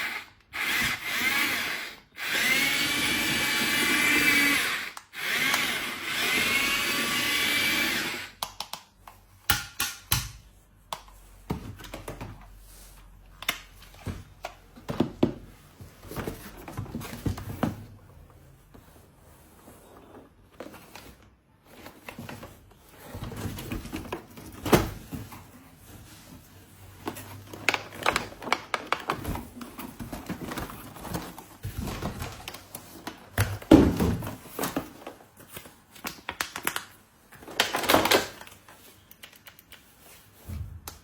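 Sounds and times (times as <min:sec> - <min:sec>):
small electric motor whirring: 0:00.0 - 0:08.4.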